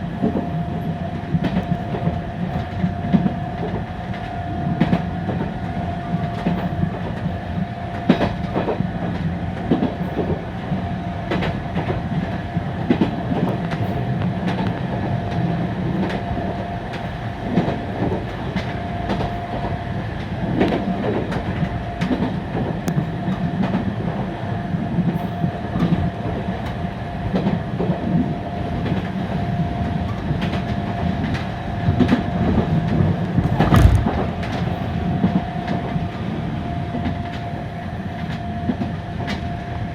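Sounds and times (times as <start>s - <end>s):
tram rumble: 0.0s - 39.9s
wheels knocking over rail joints: 33.4s - 34.5s.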